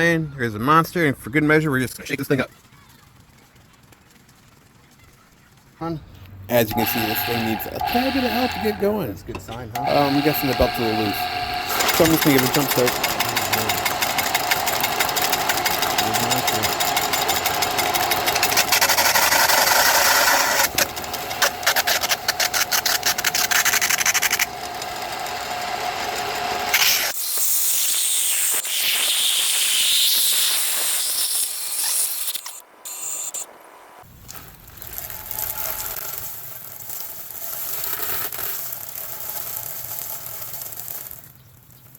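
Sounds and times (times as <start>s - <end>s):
belt sander whining: 6.5s - 27.2s
can spraying fizz hiss: 26.7s - 33.4s, 34.3s - 41.4s.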